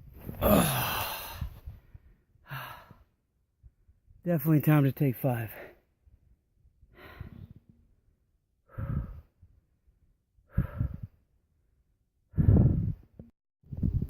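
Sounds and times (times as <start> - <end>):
man breathing heavily: 0.4 - 3.2, 6.8 - 7.7, 8.6 - 9.6, 10.4 - 11.2, 12.3 - 13.0.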